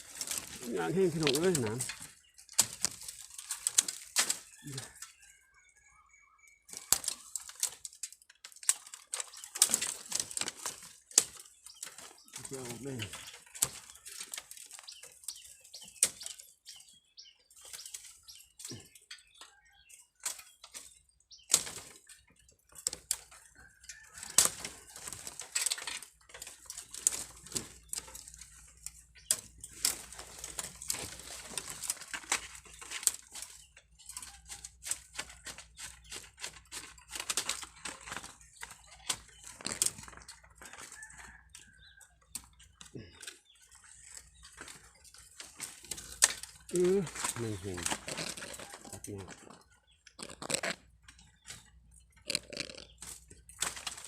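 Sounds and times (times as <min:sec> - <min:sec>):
leaves and twigs rustling and snapping: 0:00.0 - 0:05.4, 0:06.7 - 0:54.0.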